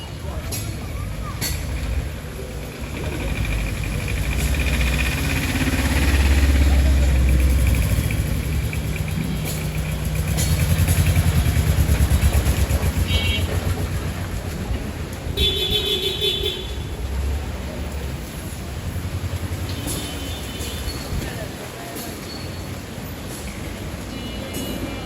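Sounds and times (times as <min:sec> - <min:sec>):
engines rumbling: 0:00.0 - 0:25.0
vehicle horn honking: 0:13.1 - 0:13.6, 0:15.4 - 0:16.8.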